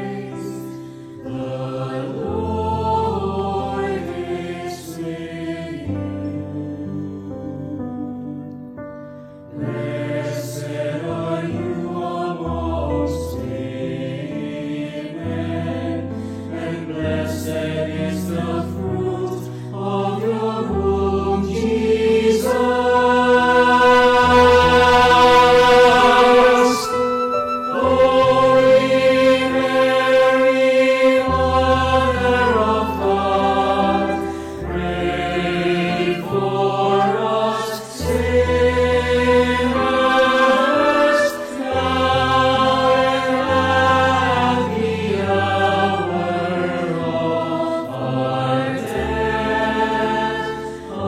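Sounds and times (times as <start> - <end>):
choir singing a chant: 0.0 - 8.3, 9.5 - 51.0.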